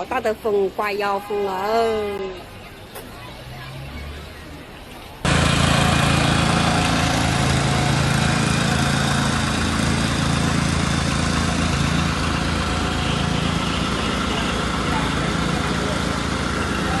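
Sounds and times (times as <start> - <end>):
small engine running: 5.2 - 17.0.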